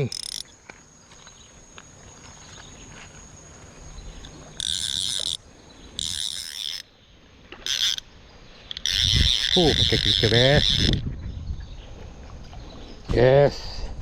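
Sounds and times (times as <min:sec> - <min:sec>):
fly reel ratcheting: 0:00.0 - 0:00.5, 0:04.6 - 0:05.4, 0:06.0 - 0:06.9, 0:07.6 - 0:11.0.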